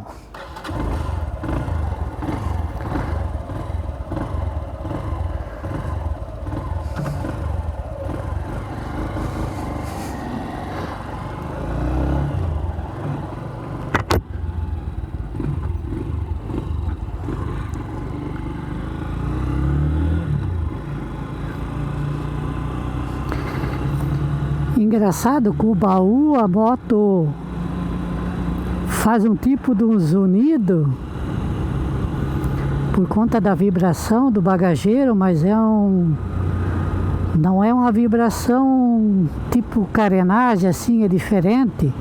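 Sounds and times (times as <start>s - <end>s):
motorcycle engine running: 0.3s - 26.6s, 31.0s - 34.4s.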